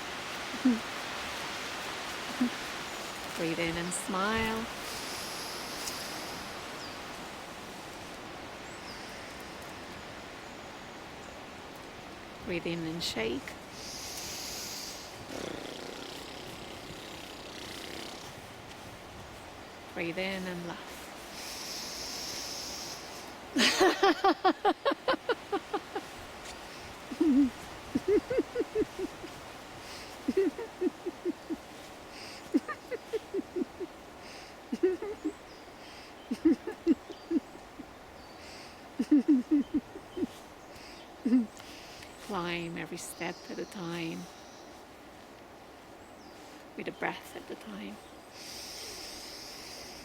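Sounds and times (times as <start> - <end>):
woodland background hiss: 0.0 - 50.0
person laughing: 0.6 - 0.8, 23.6 - 26.2, 27.1 - 29.4, 30.2 - 31.7, 32.3 - 34.0, 34.7 - 35.4, 36.3 - 37.5, 39.0 - 40.4, 41.3 - 41.5.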